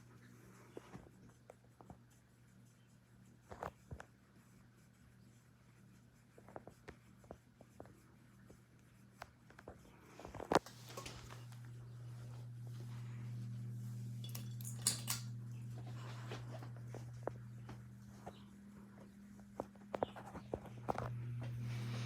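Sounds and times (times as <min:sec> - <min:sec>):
ceiling fan motor humming: 0:00.0 - 0:22.0.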